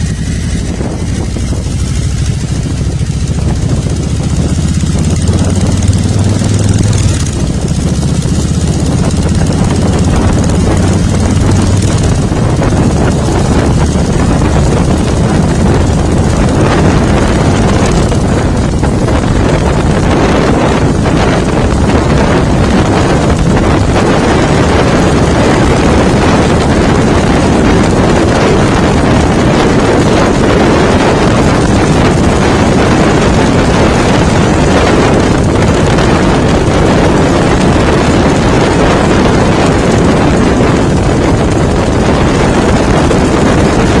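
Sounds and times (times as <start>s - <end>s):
motorcycle engine: 0.0s - 44.0s
road noise: 0.0s - 44.0s
wind buffeting microphone: 0.0s - 44.0s.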